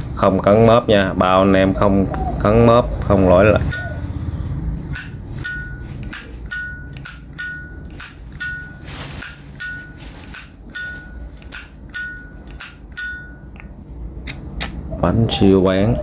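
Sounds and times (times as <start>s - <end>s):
metallic ring of lighter lid: 3.7s - 4.2s, 4.9s - 13.5s.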